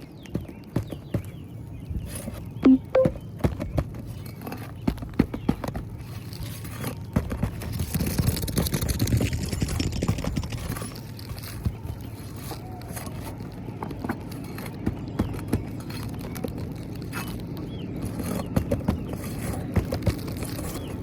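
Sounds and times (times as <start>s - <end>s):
knocks and taps on roof shingles: 0.0s - 2.5s, 3.2s - 21.0s
scraping of shingle being pried: 5.6s - 21.0s.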